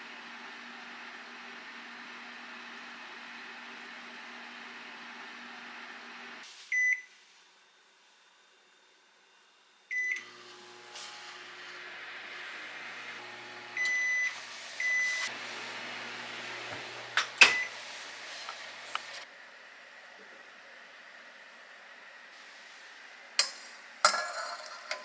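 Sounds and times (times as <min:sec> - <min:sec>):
microwave oven humming: 0:00.0 - 0:07.1, 0:09.5 - 0:25.0
microwave beeps: 0:06.7 - 0:07.2, 0:09.9 - 0:10.3, 0:13.8 - 0:15.3, 0:17.2 - 0:17.8.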